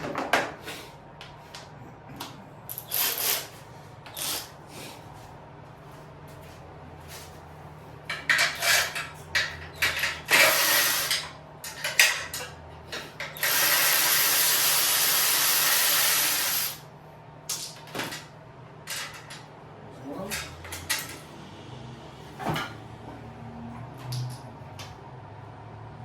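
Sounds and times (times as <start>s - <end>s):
ratchet wrench clicking: 2.7s - 3.5s, 9.9s - 11.2s, 13.3s - 16.8s.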